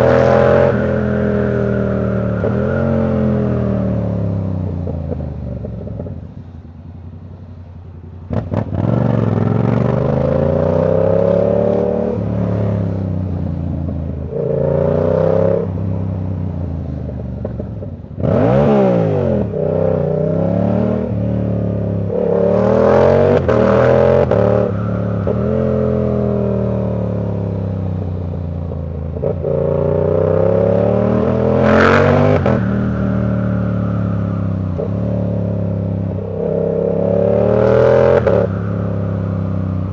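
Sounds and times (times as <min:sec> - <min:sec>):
motorcycle engine accelerating: 0:08.3 - 0:39.9.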